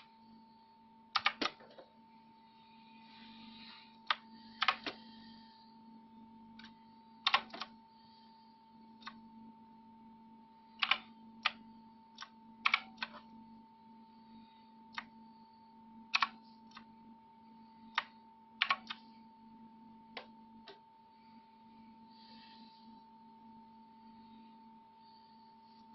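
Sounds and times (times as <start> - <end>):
faint hum: 0.0 - 25.9
mechanical keyboard keys clicking: 1.2 - 1.6, 7.3 - 7.7, 10.8 - 11.0.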